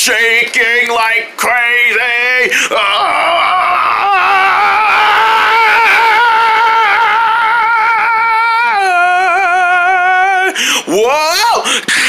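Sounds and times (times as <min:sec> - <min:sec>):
person crying out aaah: 0:02.5 - 0:11.7.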